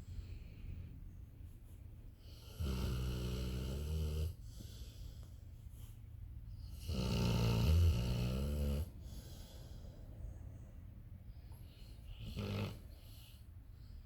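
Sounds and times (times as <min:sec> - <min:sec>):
quiet breathing: 0:00.0 - 0:06.9, 0:07.5 - 0:14.0
dog snoring: 0:02.3 - 0:04.4, 0:06.7 - 0:09.7, 0:12.1 - 0:13.3.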